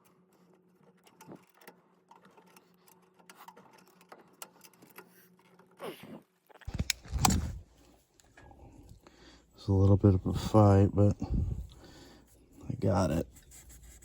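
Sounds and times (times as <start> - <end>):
plastic fittings clicking and scraping: 6.6 - 7.6.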